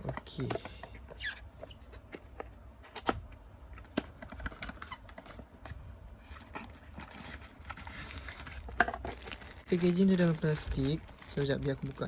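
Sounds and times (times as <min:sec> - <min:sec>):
plastic packaging rustling: 0:03.8 - 0:12.0.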